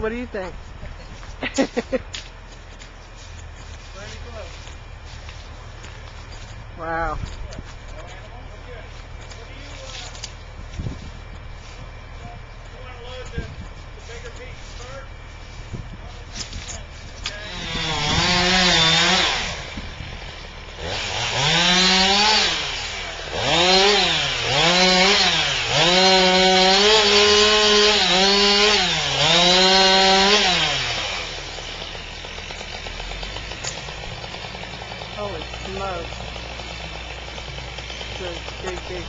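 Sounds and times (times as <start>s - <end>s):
chainsaw engine revving: 17.2s - 39.0s.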